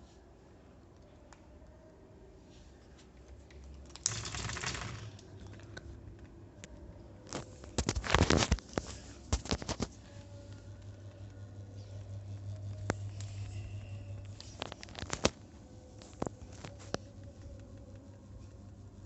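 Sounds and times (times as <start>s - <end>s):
fan motor hum: 4.0s - 19.0s.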